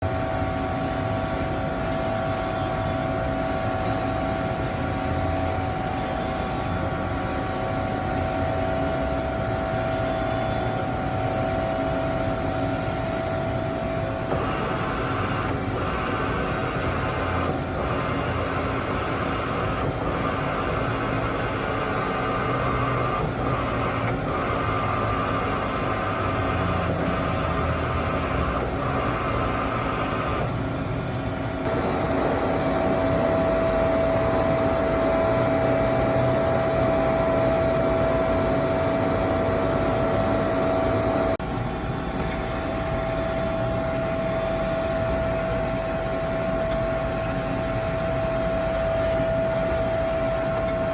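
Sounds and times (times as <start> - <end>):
high steady whine: 0.0 - 50.9
machine hum: 31.4 - 41.7.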